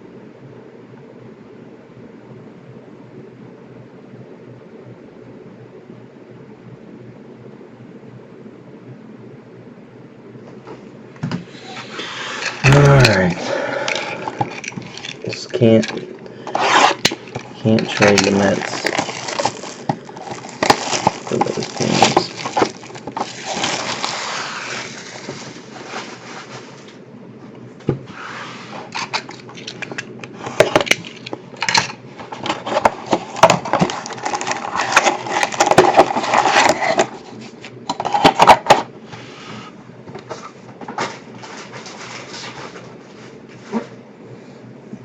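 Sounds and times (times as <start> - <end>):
wrapping crinkling and rustling: 11.9 - 26.6, 29.0 - 37.7.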